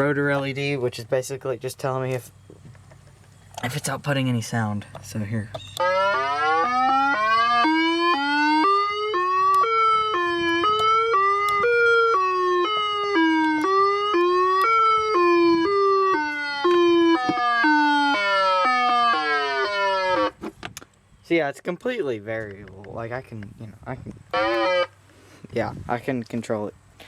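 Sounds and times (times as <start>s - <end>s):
electronic siren wailing: 5.8s - 20.4s, 24.3s - 24.9s.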